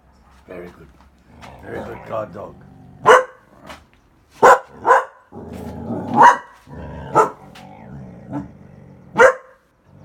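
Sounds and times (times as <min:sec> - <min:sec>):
dog growling low rumble: 0:01.2 - 0:03.8, 0:04.7 - 0:09.2, 0:09.8 - 0:10.0
dog barking: 0:03.0 - 0:03.4, 0:04.4 - 0:05.2, 0:06.1 - 0:07.4, 0:09.1 - 0:09.6.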